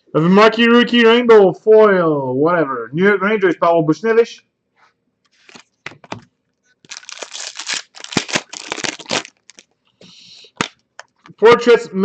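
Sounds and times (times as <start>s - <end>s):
cards rustling and shuffling: 5.3s - 9.7s.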